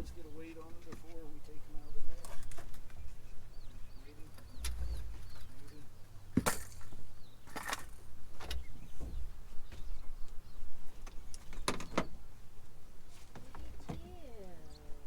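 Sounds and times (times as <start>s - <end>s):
wind rumble on microphone: 1.7s - 6.2s.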